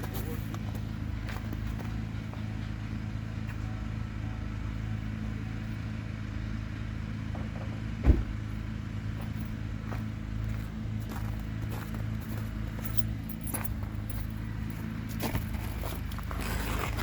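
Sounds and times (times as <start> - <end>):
diesel engine idling: 0.0 - 17.0
sharp thump: 7.4 - 8.5.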